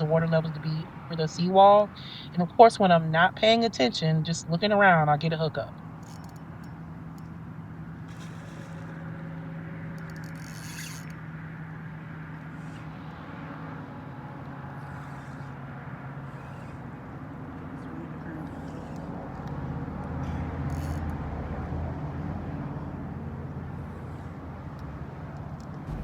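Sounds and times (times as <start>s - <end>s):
low motor hum: 0.0s - 26.0s
outdoor noise: 0.0s - 26.0s
short rasping sounds: 14.6s - 21.1s.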